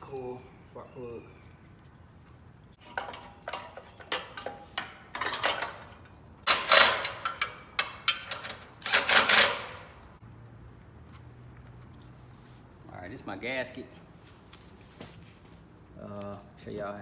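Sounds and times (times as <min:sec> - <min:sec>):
metal parts clattering scrapes: 0:02.8 - 0:10.0
metal parts clicking and knocking: 0:02.8 - 0:10.1.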